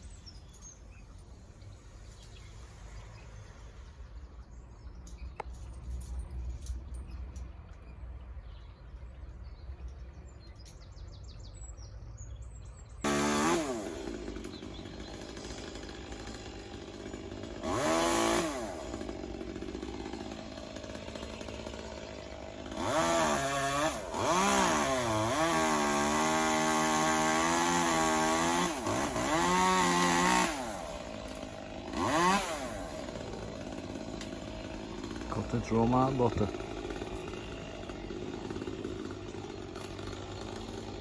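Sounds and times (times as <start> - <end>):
chainsaw idling and revving: 13.0 - 41.0.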